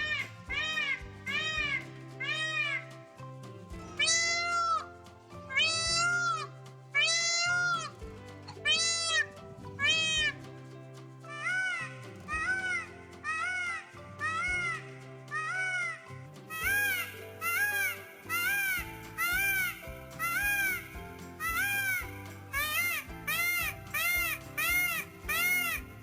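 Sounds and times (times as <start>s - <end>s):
background music: 0.0s - 26.0s
peacock calling: 12.6s - 26.0s.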